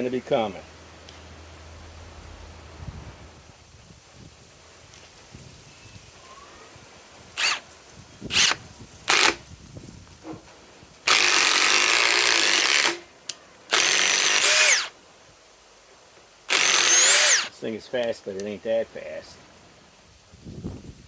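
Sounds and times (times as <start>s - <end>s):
impact driver hammering screw into wood: 8.3s - 9.4s, 16.5s - 17.5s.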